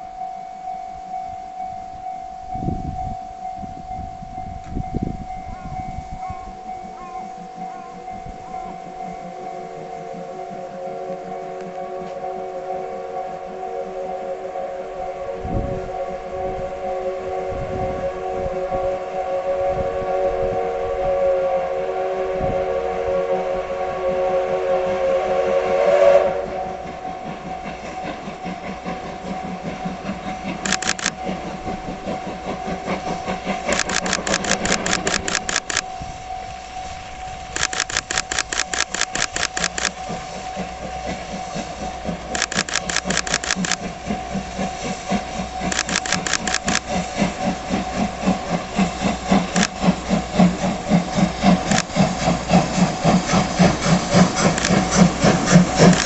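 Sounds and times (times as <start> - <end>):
steam locomotive exhaust beats: 0.0 - 56.0
rapid clicking bursts: 28.1 - 35.8, 37.6 - 40.7, 42.0 - 56.0.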